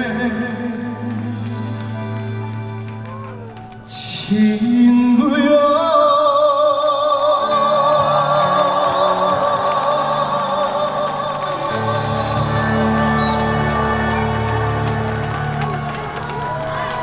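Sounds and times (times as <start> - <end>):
man singing high note with vibrato: 3.9 - 14.0.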